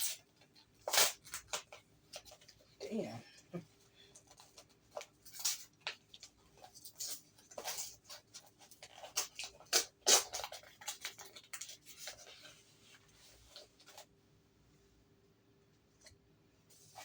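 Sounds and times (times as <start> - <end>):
packaging rustling and crinkling: 4.1 - 14.2.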